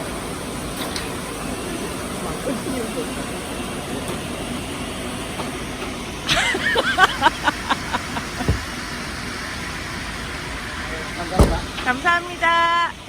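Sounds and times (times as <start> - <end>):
traffic hum: 0.0 - 13.0
low thump: 8.4 - 8.7
firewood clattering: 8.4 - 8.8.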